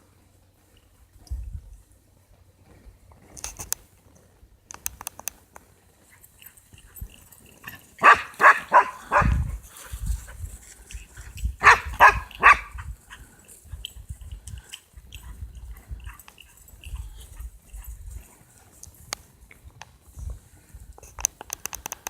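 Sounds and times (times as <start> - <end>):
dogs barking: 7.6 - 9.5, 11.6 - 12.9.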